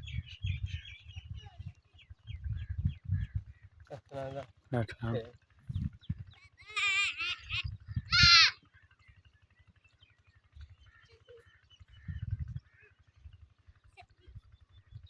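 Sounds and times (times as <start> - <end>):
goat bleating: 6.7 - 8.6
faint low regular throb: 10.6 - 15.0.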